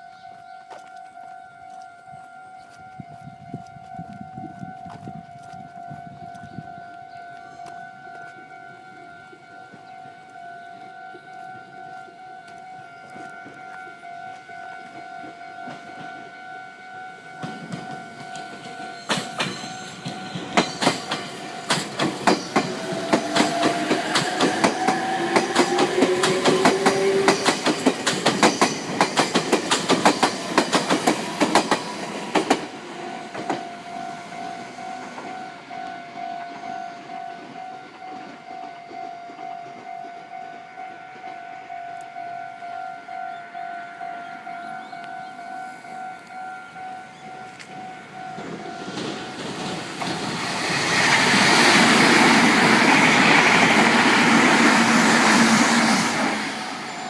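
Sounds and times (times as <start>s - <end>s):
electric train whine: 0.0s - 57.0s
level crossing warning bell: 0.0s - 57.0s
train wheels clattering: 17.2s - 33.8s, 47.2s - 57.0s.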